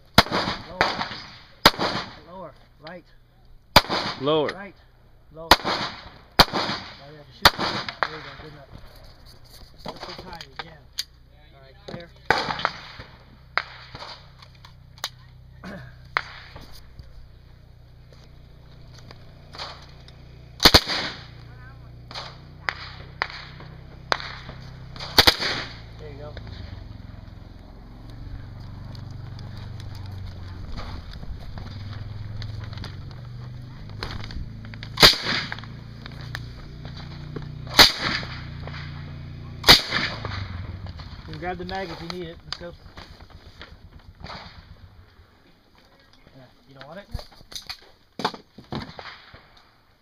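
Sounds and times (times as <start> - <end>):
gunshots: 0.2 - 2.4, 3.7 - 4.5, 5.4 - 8.6, 12.2 - 14.4, 15.7 - 16.8, 19.3 - 26.9, 33.8 - 36.2, 36.8 - 45.0, 48.2 - 49.6.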